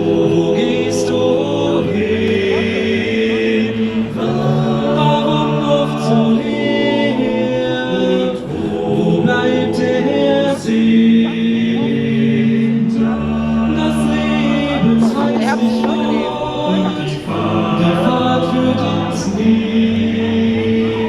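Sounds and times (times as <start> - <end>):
male vocal group singing: 0.0 - 21.0.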